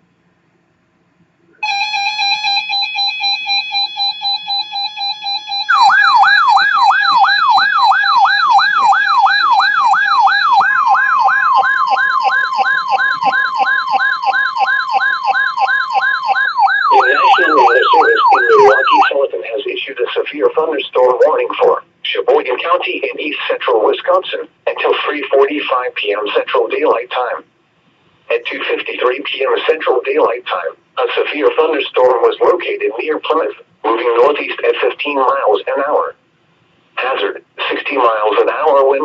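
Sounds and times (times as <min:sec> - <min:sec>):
siren-like falling wail: 0:01.6 - 0:19.1
pulsing alarm tone: 0:01.6 - 0:19.2
steady warning alarm tone: 0:01.6 - 0:21.8
broadcast voice: 0:16.9 - 0:27.5, 0:28.3 - 0:36.2, 0:37.0 - 0:39.0.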